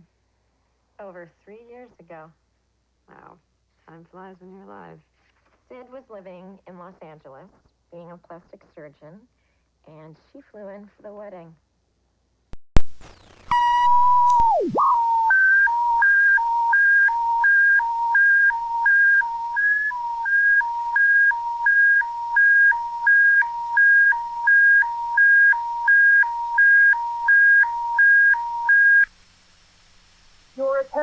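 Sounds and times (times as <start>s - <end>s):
beep sagging in pitch: 12.8s - 29.1s
alternating high and low alert tones: 13.5s - 29.1s.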